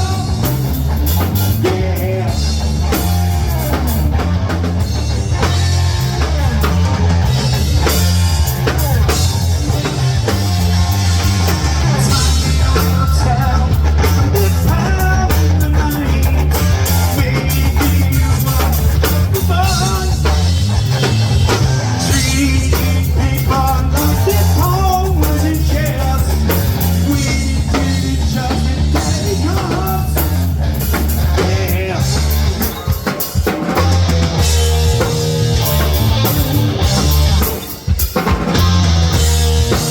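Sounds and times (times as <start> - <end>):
person singing: 0.0 - 4.2, 11.2 - 20.5, 22.0 - 35.9
live rock band playing: 0.0 - 39.9.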